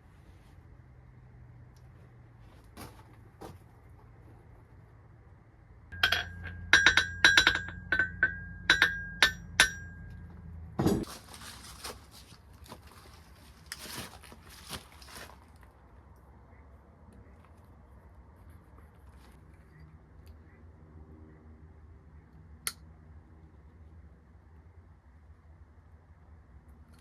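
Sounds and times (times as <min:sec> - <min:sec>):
scraping and handling noises: 0:01.8 - 0:05.0, 0:10.8 - 0:15.8
hammer striking anvil: 0:05.9 - 0:11.1.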